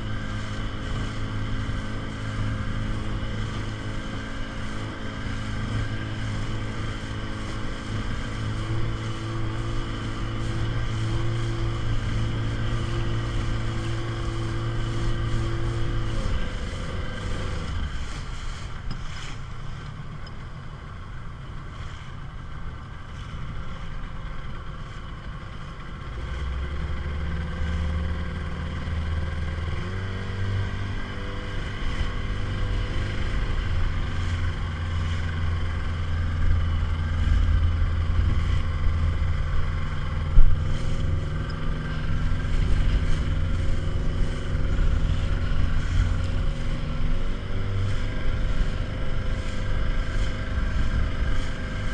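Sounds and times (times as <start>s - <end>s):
motorboat engine running: 0.0s - 51.9s.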